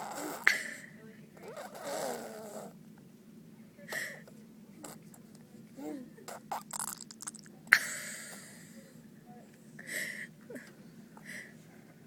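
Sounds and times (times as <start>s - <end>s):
baby blowing raspberries: 6.5s - 7.5s.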